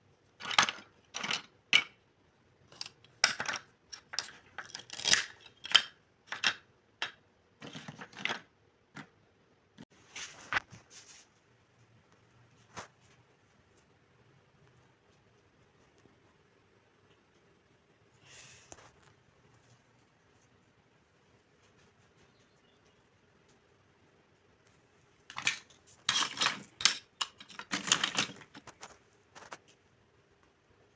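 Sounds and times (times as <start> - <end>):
plastic toy pieces clicking: 0.4 - 2.0, 2.7 - 9.1, 25.3 - 28.7.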